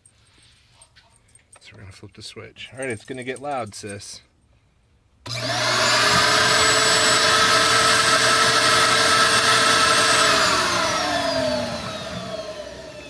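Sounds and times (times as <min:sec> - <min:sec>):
shop vacuum motor whining: 0:05.2 - 0:13.0.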